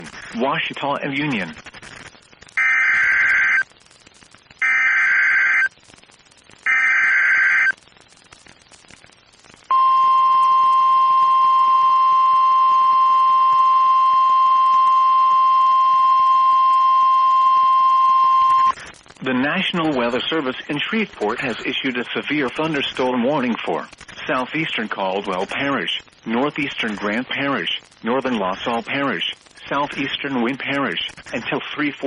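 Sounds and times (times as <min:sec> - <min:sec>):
digital data bursts buzzing screech: 0:01.1 - 0:03.6, 0:04.6 - 0:05.7, 0:06.7 - 0:07.7.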